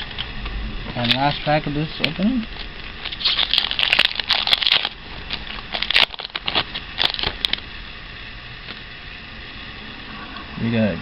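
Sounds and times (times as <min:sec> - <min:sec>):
steady hiss: 0:00.0 - 0:11.0
foil wrapper crinkling: 0:01.0 - 0:07.7.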